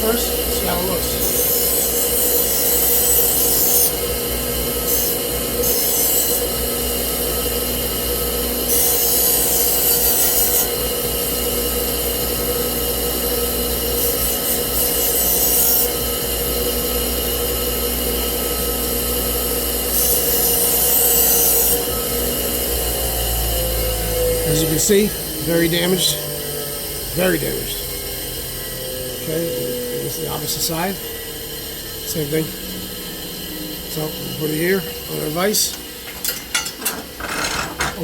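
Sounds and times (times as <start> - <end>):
metal blade scraping on wheel: 36.0 - 38.0.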